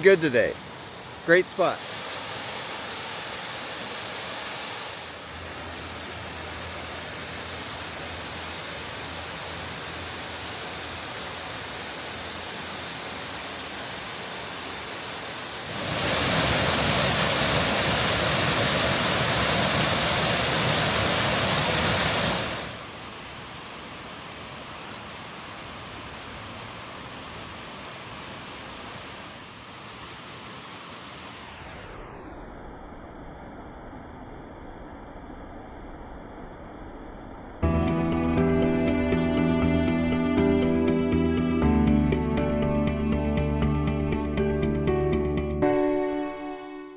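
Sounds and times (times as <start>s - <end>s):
waterfall rushing: 0.1s - 23.7s.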